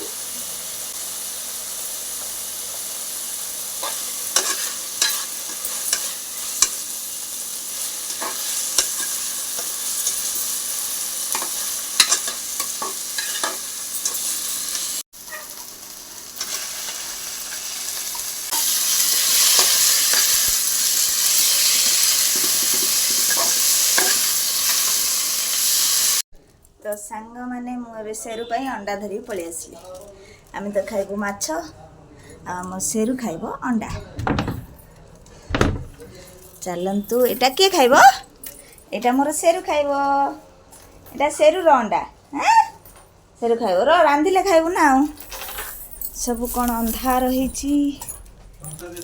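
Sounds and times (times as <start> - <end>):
food sizzling in hot oil: 0.0 - 26.3.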